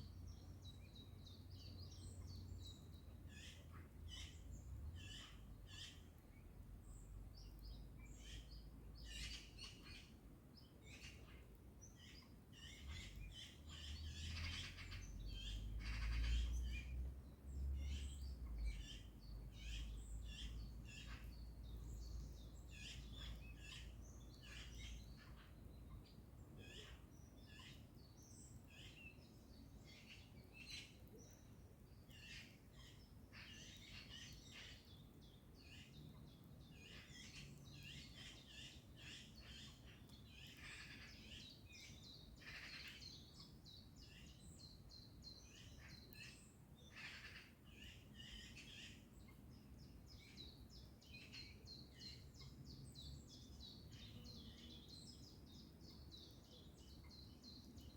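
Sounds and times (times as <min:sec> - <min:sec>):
small birds chirping: 0:00.0 - 0:57.9.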